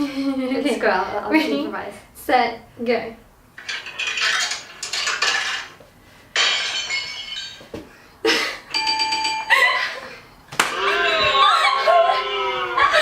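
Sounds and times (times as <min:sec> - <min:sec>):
glass clinking and breaking: 0:06.4 - 0:07.7.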